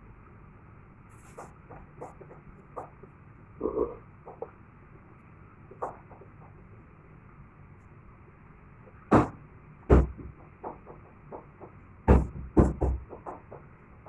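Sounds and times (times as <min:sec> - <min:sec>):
faint low hum: 0:00.0 - 0:14.0
sharp knocks and clicks: 0:01.4 - 0:03.1, 0:04.2 - 0:04.6, 0:05.7 - 0:06.7, 0:09.1 - 0:14.0.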